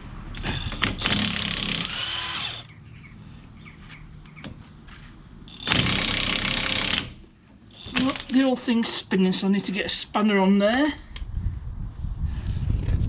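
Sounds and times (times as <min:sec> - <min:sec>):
impact wrench hammering: 0:05.6 - 0:07.2.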